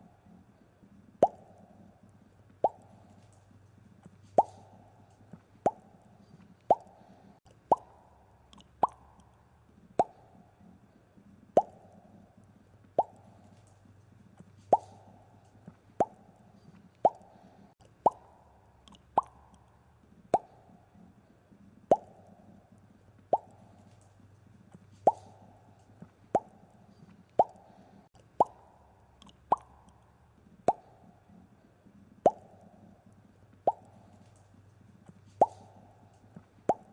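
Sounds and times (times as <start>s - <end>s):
bubbles popping: 11.6s - 11.8s.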